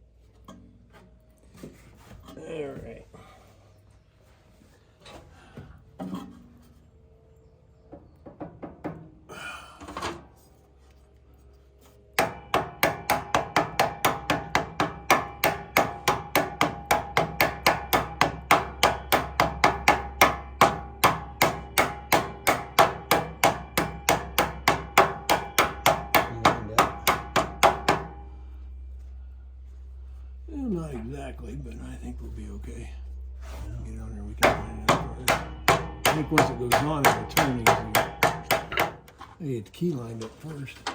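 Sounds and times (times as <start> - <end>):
hammer tapping on metal: 12.2 - 28.3, 34.4 - 39.2.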